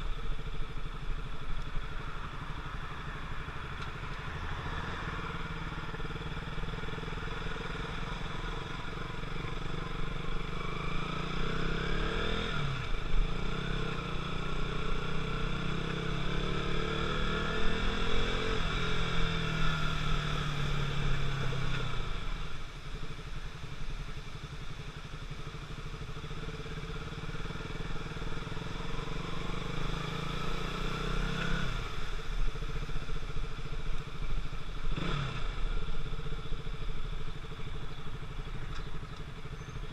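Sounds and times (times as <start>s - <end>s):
motorcycle engine revving: 0.0s - 23.2s, 24.4s - 39.9s.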